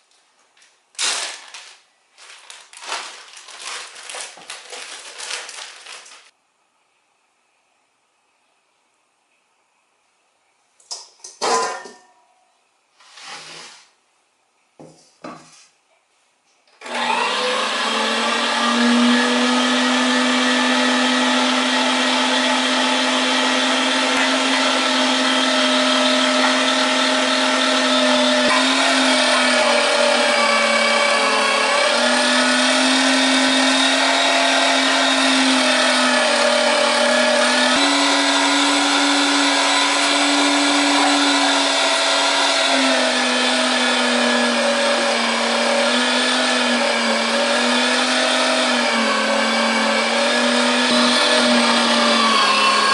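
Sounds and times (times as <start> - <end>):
handling sounds: 0.1 - 6.3
electric meat grinder motor hum: 16.8 - 52.9.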